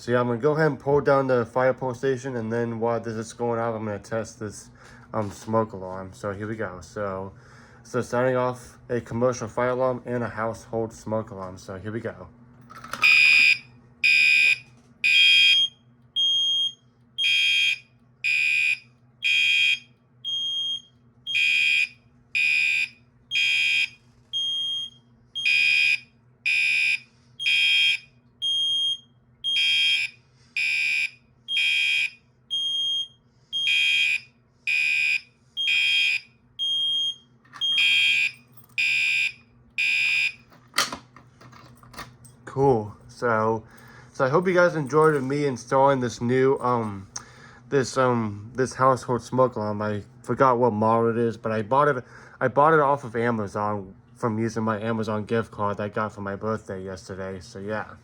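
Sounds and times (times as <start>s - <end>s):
fire alarm horn blasts: 13.0s - 40.4s
smoke alarm beeping: 13.0s - 40.5s.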